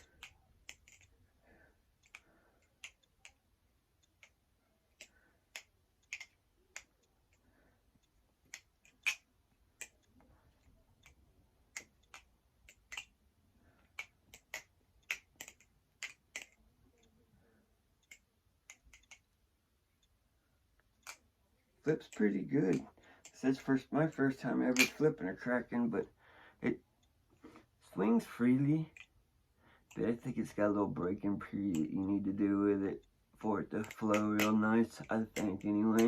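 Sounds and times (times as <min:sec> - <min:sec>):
butterfly knife flipping clicks: 0:33.7 - 0:36.0.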